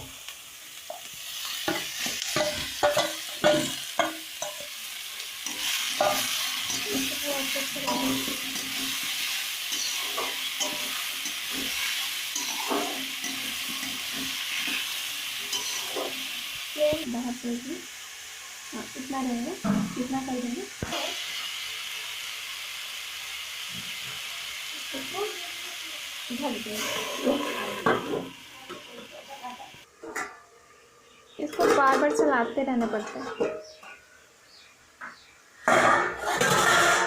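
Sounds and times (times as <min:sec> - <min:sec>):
frying in hot oil sizzling: 0:00.0 - 0:29.9, 0:30.8 - 0:37.0
spoon scraping and knocking pan: 0:00.9 - 0:16.4, 0:35.7 - 0:37.0.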